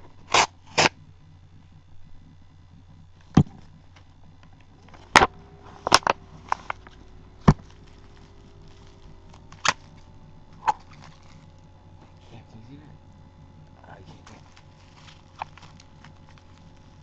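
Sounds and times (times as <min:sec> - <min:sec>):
packaging cracking and tapping: 0:14.2 - 0:17.0.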